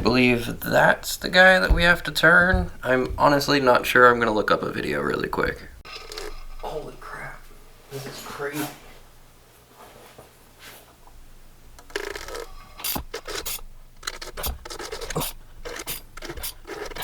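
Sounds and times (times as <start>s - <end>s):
hand tools scraping metal: 0.0s - 3.9s, 12.0s - 17.0s.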